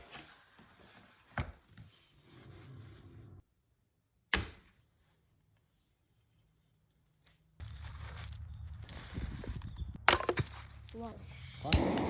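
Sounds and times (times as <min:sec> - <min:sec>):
axe striking firewood: 0:10.0 - 0:10.7.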